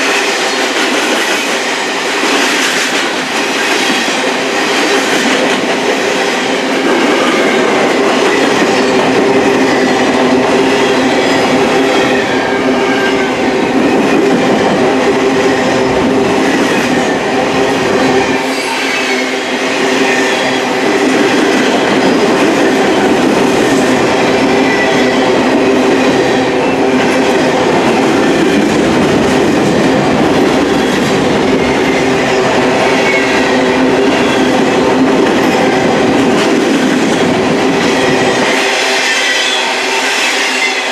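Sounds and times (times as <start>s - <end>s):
freight train cars rolling past: 0.0s - 40.9s
wheels squealing on rails: 15.2s - 34.6s, 37.0s - 40.9s.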